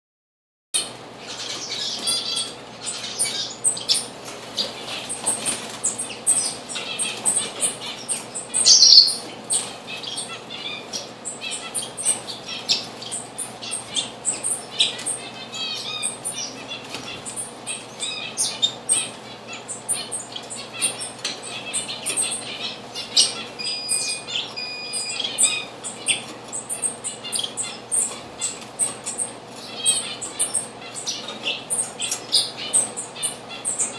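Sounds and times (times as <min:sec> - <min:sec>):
small birds chirping: 0:00.8 - 0:33.9
loud sweeping bird call: 0:07.8 - 0:09.2.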